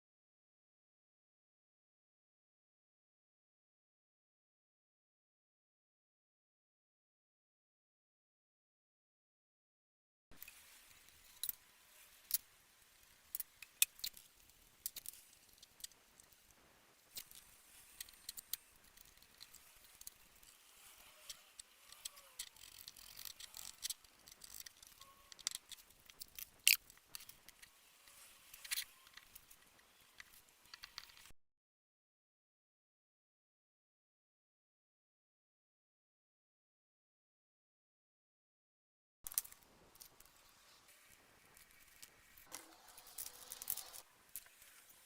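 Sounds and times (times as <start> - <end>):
small metal parts clicking: 10.4 - 31.3, 39.3 - 45.0.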